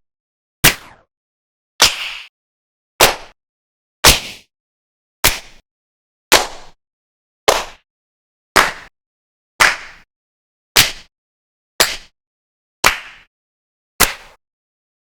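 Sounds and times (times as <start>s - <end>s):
hand claps: 3.0s - 3.4s, 6.3s - 6.8s, 7.5s - 7.8s, 8.6s - 8.9s, 9.6s - 10.1s, 10.8s - 11.1s, 11.8s - 12.2s, 12.8s - 13.3s, 14.0s - 14.4s.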